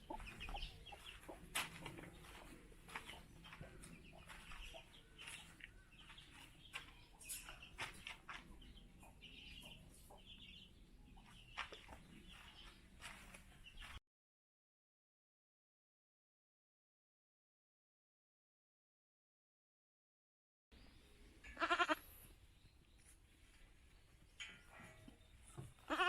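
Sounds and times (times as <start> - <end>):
farm birds calling: 0.0 - 14.0, 20.8 - 26.0.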